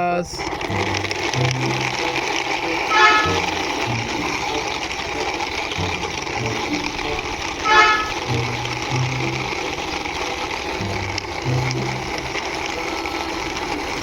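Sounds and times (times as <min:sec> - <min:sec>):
background music: 0:00.0 - 0:14.0
vehicle horn tooting: 0:02.7 - 0:03.8, 0:07.6 - 0:08.9.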